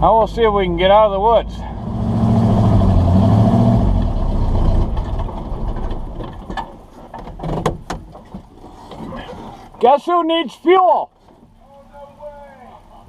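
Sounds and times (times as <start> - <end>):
truck engine pulling under load: 0.0 - 7.6.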